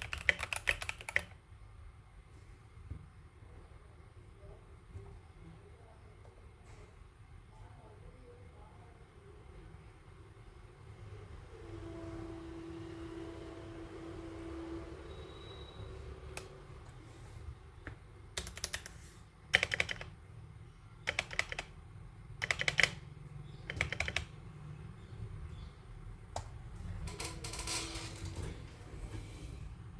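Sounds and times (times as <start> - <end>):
mechanical keyboard typing: 0.0 - 1.4, 18.3 - 20.2, 21.0 - 21.8, 22.4 - 24.4.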